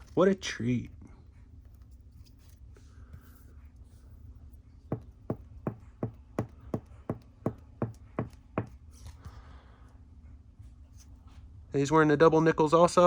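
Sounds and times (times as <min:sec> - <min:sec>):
sharp taps on hard surface: 0:04.9 - 0:08.8.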